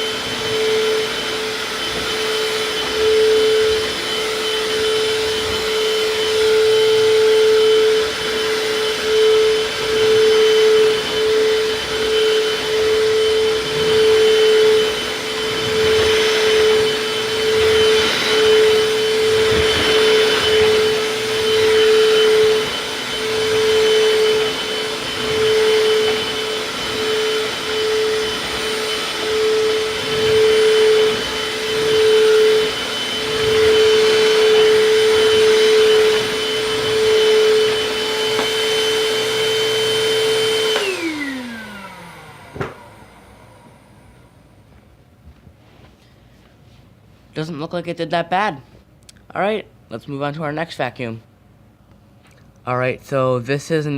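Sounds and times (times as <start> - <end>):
vacuum cleaner running: 0.0 - 48.7.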